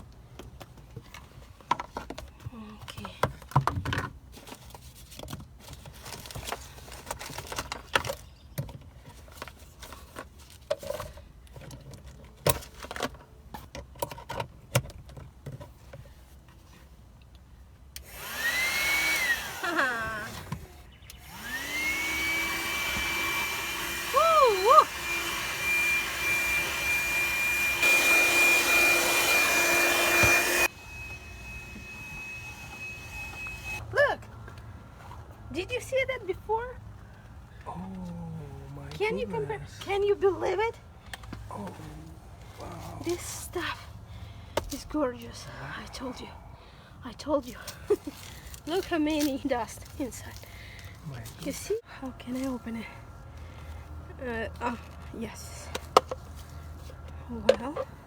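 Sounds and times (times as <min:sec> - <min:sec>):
knocks and rustles of handling: 0:00.1 - 0:17.4
handheld vacuum motor whining: 0:18.0 - 0:33.8.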